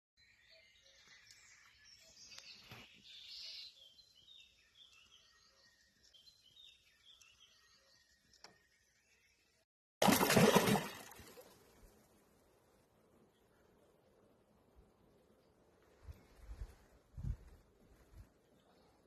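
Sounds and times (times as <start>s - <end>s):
small birds chirping: 0.2s - 9.6s
quiet outdoor hiss: 11.2s - 19.0s.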